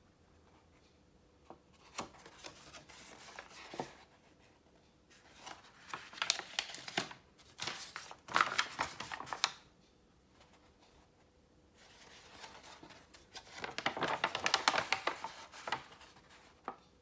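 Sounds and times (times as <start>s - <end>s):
paper rustling and crinkling: 1.7s - 4.5s, 5.1s - 9.6s, 11.8s - 16.8s.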